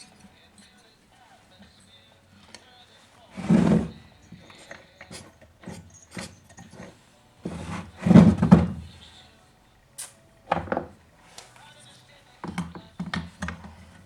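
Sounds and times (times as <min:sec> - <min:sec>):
tools and parts handled: 0:02.4 - 0:09.1, 0:12.4 - 0:14.0.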